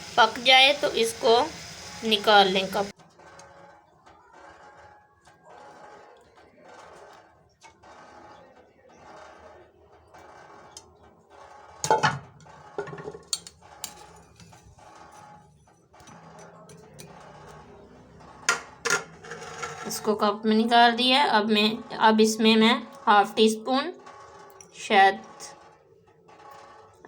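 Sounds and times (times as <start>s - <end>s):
kitchen utensils clanking: 11.8s - 21.0s.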